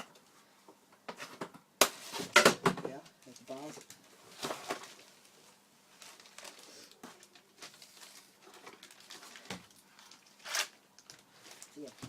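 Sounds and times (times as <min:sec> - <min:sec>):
packaging wrapping crinkling: 0:03.2 - 0:12.0.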